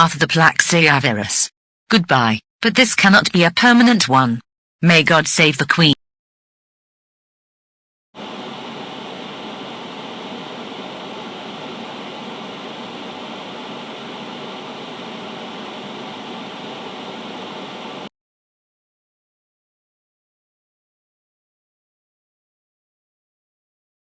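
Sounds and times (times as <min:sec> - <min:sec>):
static hiss: 0:08.2 - 0:18.1.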